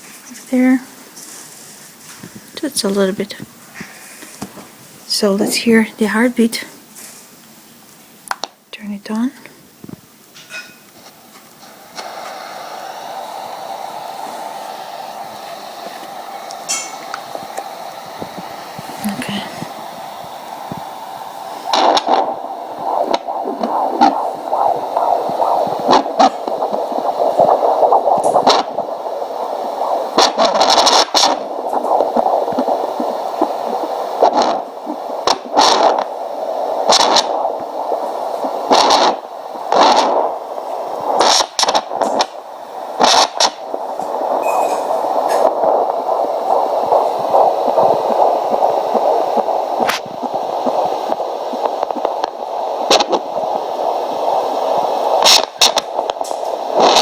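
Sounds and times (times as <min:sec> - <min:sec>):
probe scraping crackles: 0:00.0 - 0:07.4, 0:08.3 - 0:57.0
doppler speaker hissing and whooshing: 0:11.5 - 0:57.0.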